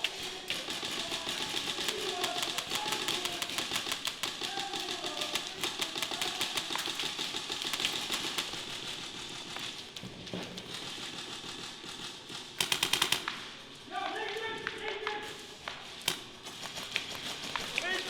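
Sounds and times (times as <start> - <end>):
airsoft gunfire clicking bursts: 0.0 - 10.0, 10.6 - 18.0.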